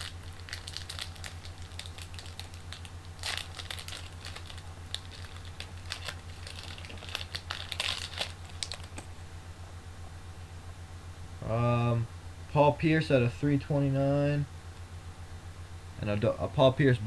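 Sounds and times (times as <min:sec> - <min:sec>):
cards rustling: 0:00.0 - 0:09.1.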